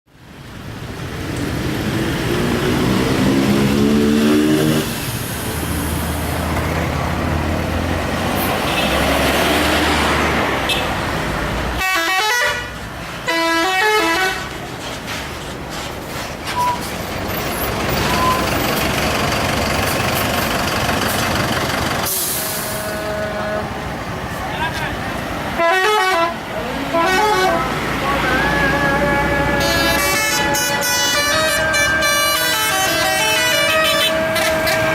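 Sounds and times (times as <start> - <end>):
multi-tone musical air horn: 11.8 - 14.5, 22.1 - 23.8, 25.6 - 34.9
coach engine running: 14.5 - 34.8.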